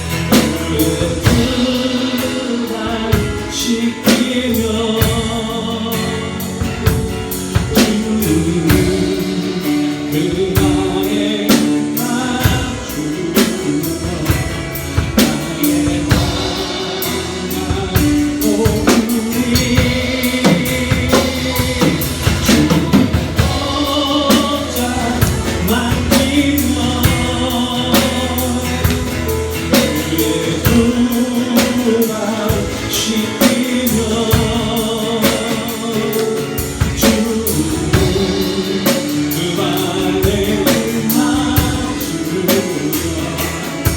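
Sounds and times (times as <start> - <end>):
drum kit: 0.0 - 43.9
people singing: 0.0 - 43.9
praise band playing: 0.0 - 43.9.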